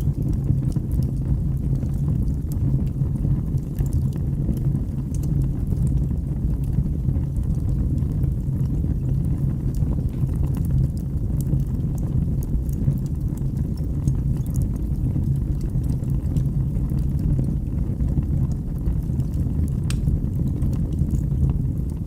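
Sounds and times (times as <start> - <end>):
fire crackling and popping: 0.0 - 22.0
fire roaring low: 0.0 - 22.0.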